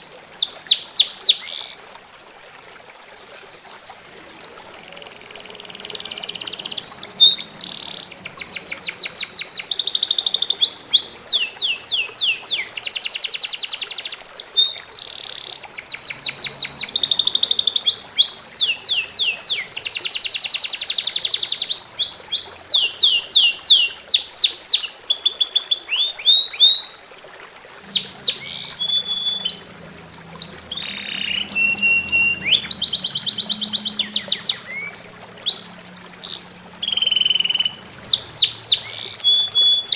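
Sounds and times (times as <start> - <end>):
faint trickle of water: 0.0 - 39.9
songbird trilling: 4.5 - 26.9, 27.8 - 39.9.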